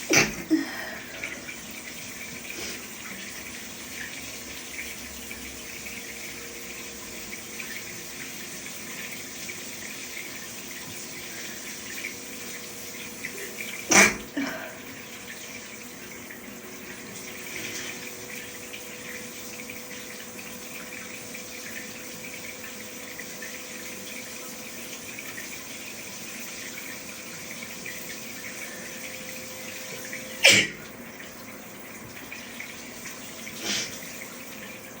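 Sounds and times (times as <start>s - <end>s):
shower running: 0.0s - 35.0s
person sneezing: 13.9s - 14.8s, 30.4s - 30.8s, 33.6s - 34.0s.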